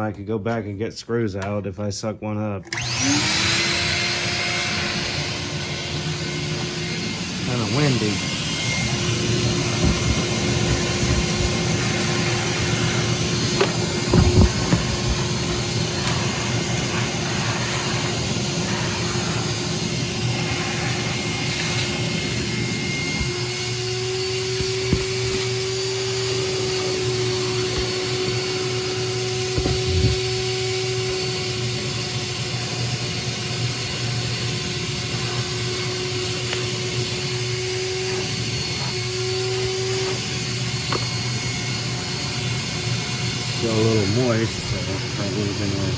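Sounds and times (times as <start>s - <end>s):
vacuum cleaner running: 2.6s - 45.9s
debris clunking in vacuum: 13.4s - 16.4s.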